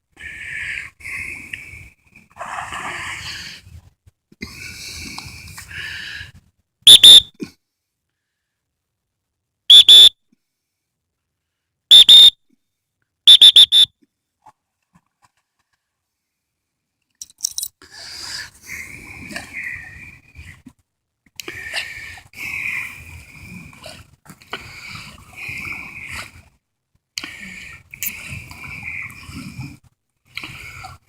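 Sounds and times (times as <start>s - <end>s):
dog whistle blasts: 6.9s - 7.3s, 9.7s - 10.1s, 11.9s - 12.4s, 13.3s - 13.9s.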